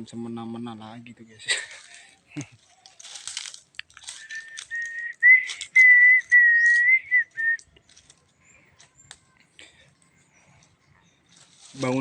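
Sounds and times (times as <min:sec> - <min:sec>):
person whistling: 0:04.2 - 0:07.6.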